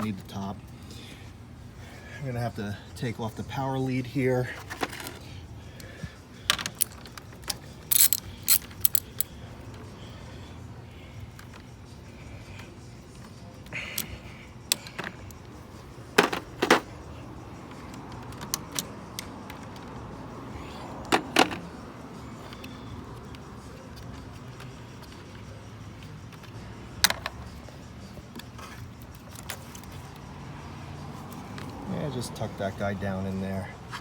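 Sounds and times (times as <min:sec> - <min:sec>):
hand tools clicking on metal: 0:06.5 - 0:09.4.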